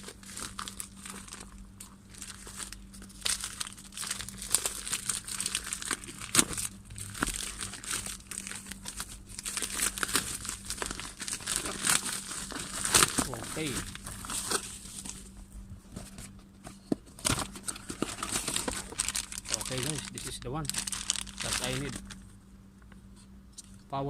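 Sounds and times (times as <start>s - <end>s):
plastic packaging crinkling: 0.0s - 15.4s, 17.2s - 22.3s
faint low hum: 0.0s - 24.0s.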